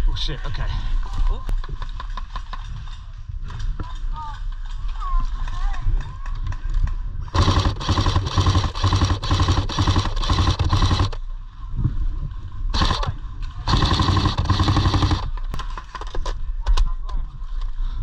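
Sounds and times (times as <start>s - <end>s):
airsoft rifle firing bursts: 7.3s - 11.2s, 12.7s - 15.6s.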